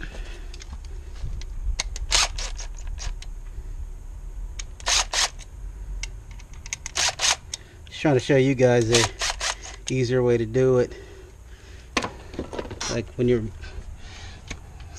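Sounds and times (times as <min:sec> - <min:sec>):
low steady hum: 0:00.0 - 0:14.9
tools clicking and scraping: 0:01.8 - 0:03.3, 0:04.6 - 0:07.6, 0:08.7 - 0:10.0.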